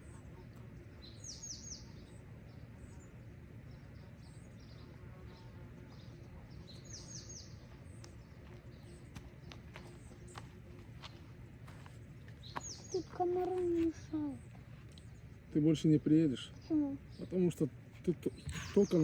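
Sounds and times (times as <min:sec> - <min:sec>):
low outdoor rumble: 0:00.0 - 0:19.0
songbird calling: 0:00.0 - 0:19.0.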